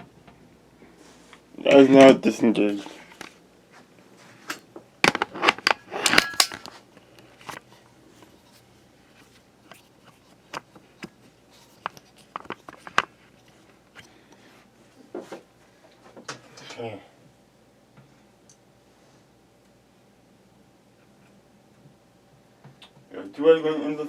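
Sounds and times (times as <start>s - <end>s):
plastic fan parts clicking: 11.8s - 13.1s.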